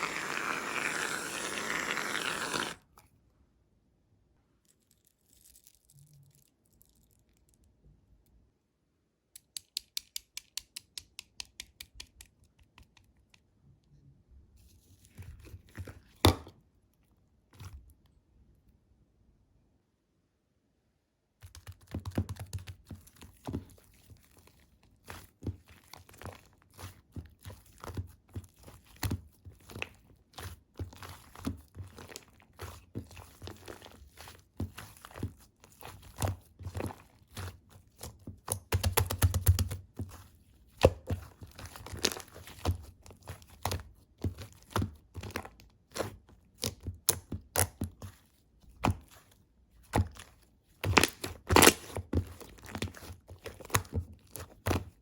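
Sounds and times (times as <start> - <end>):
slime squished by hand: 21.4 - 55.0.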